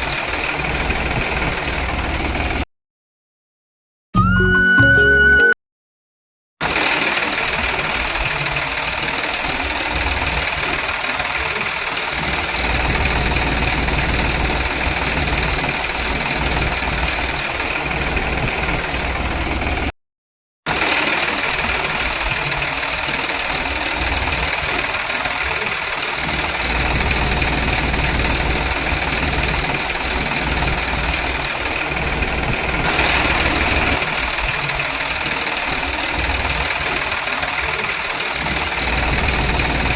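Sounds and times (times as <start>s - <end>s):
small motor running: 20.8s - 39.9s.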